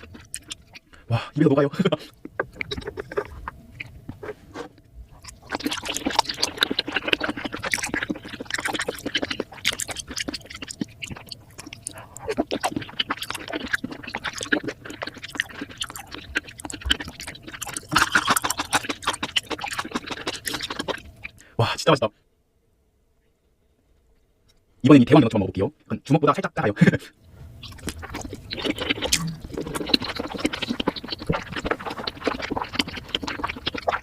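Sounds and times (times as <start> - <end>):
wet chewing and mouth smacks: 0.0 - 1.0, 2.1 - 21.4, 27.5 - 34.0.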